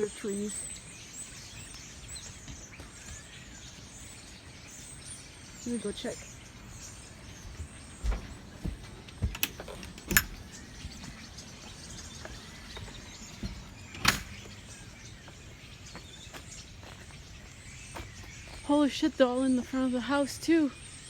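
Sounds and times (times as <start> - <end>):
flock of birds chirping: 0.0 - 21.0.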